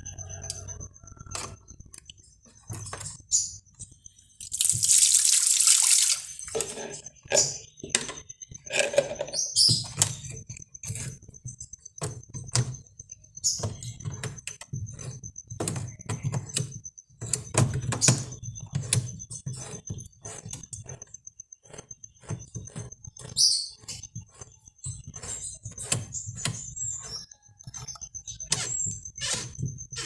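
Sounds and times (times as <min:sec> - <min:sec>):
metal and plastic parts clattering: 0:04.4 - 0:08.1.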